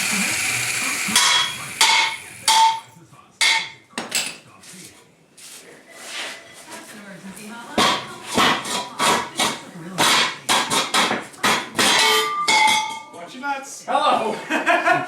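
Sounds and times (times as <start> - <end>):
machine noise: 0.0 - 2.5
hammer striking steel: 1.2 - 4.4, 7.8 - 13.1.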